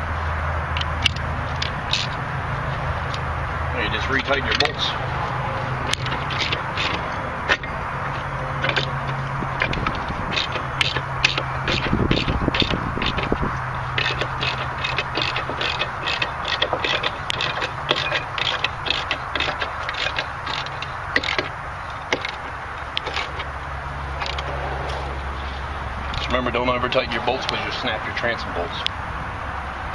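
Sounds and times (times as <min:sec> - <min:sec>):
steady low hum: 0:00.0 - 0:29.9
ratchet wrench clicking: 0:00.7 - 0:02.2, 0:05.9 - 0:07.7, 0:08.6 - 0:23.5.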